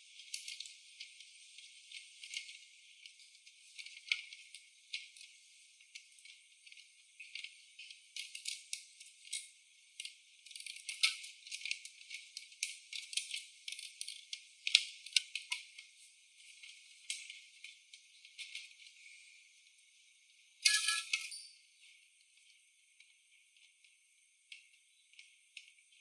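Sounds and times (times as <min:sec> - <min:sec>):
small hard parts clicking and rattling: 0:00.0 - 0:19.0.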